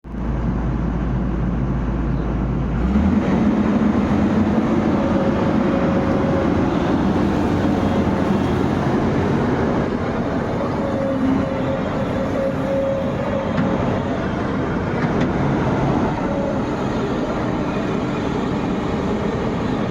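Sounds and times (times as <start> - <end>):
excavator engine running: 0.1 - 19.9
thin whine: 4.4 - 19.9.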